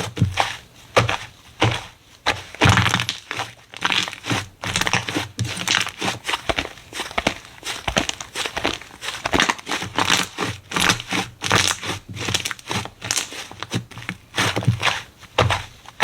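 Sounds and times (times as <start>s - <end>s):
slime squelching: 0.0s - 16.0s
slime popping and crackling: 2.4s - 13.8s.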